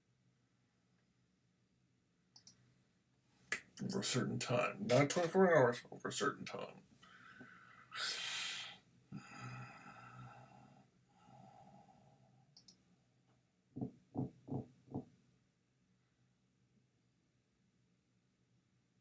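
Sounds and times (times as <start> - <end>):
soft clicks: 2.4 - 2.6, 12.6 - 12.8.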